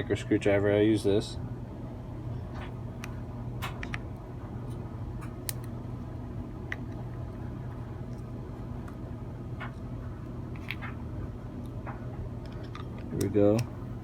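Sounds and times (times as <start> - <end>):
light clicks of small metal parts: 12.4 - 13.7.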